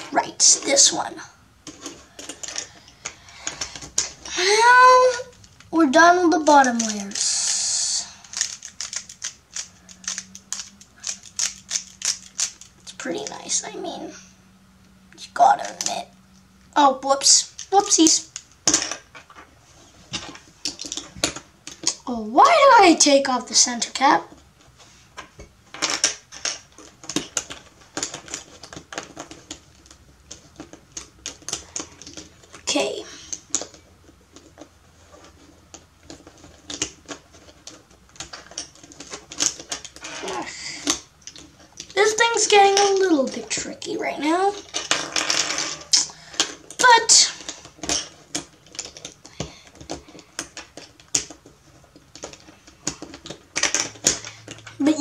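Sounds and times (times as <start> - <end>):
plastic cube pieces clicking: 5.1 - 12.8, 44.5 - 54.7.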